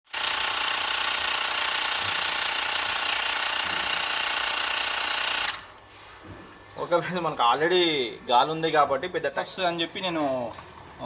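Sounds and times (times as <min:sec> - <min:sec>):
air compressor humming: 0:00.1 - 0:06.6.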